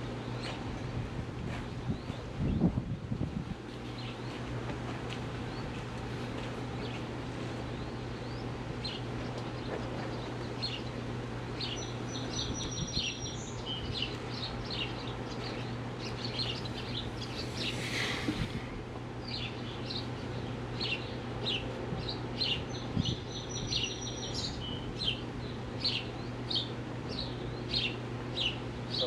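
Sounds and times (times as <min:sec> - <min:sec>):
steady low hum: 0:00.0 - 0:29.0
birds chirping: 0:07.6 - 0:29.0.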